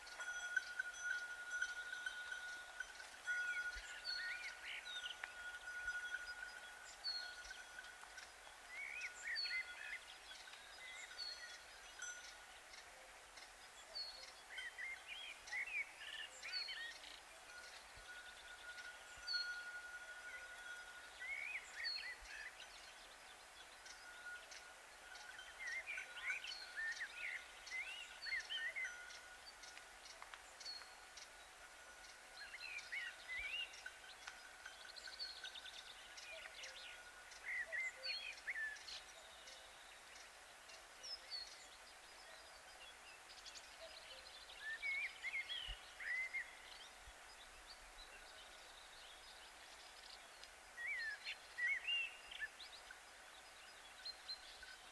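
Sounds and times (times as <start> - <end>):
small birds chirping: 0.0 - 54.9
faint steady high tone: 13.8 - 23.1.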